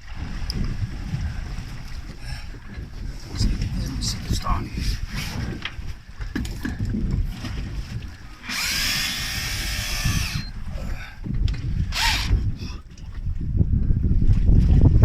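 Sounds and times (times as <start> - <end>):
fishing reel whirring: 8.4 - 10.6, 11.8 - 12.7.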